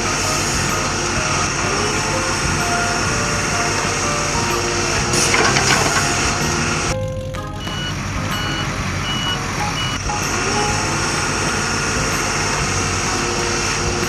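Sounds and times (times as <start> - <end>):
heavy engine running: 0.0 - 14.0
reversing beeps: 7.6 - 10.9.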